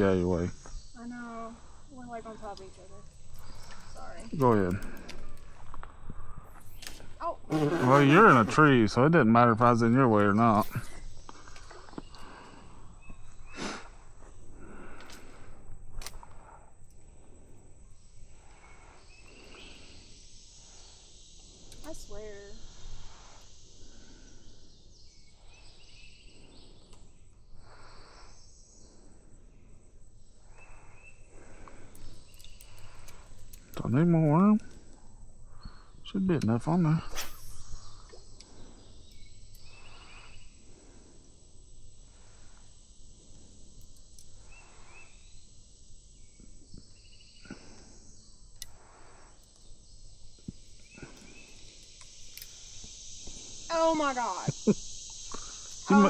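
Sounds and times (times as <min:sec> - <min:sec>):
insects buzzing and chirping: 0:00.0 - 0:56.0
faint ticks: 0:01.6 - 0:07.2, 0:20.6 - 0:24.1, 0:26.4 - 0:27.1, 0:30.4 - 0:36.6, 0:37.3 - 0:40.4, 0:42.1 - 0:45.3, 0:46.3 - 0:56.0.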